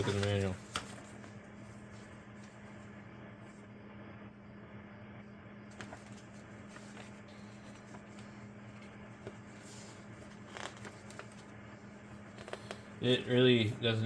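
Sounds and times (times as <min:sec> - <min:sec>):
paper rustling: 0:00.0 - 0:02.9, 0:05.7 - 0:12.9
steady low hum: 0:00.0 - 0:14.0.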